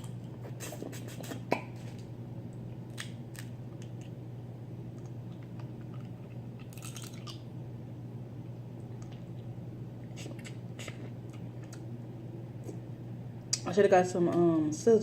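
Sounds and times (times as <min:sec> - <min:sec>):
crab shell cracking: 0:02.9 - 0:04.2
chewing: 0:05.0 - 0:07.4, 0:09.0 - 0:11.8.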